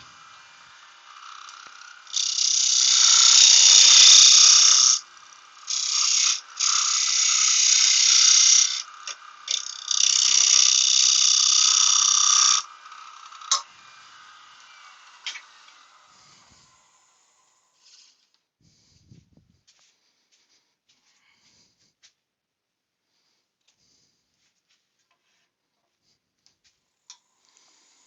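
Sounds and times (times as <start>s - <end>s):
lathe winding down: 0.0s - 18.0s
wood lathe cutting hiss: 0.0s - 18.2s, 27.1s - 28.0s.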